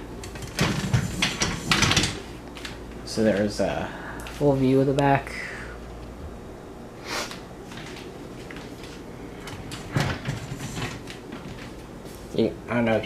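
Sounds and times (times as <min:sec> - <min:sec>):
faint background hum: 0:00.0 - 0:13.0.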